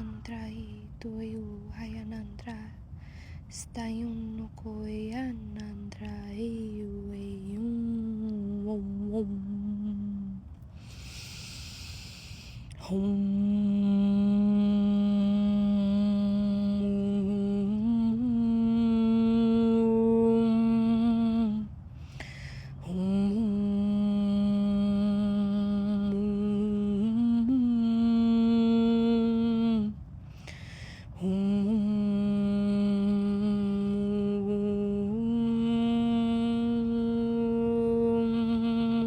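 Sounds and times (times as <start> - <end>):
woman breathing in: 2.9 - 3.5, 10.7 - 12.7, 21.9 - 22.8, 30.2 - 31.2
woman humming held notes: 31.2 - 39.0.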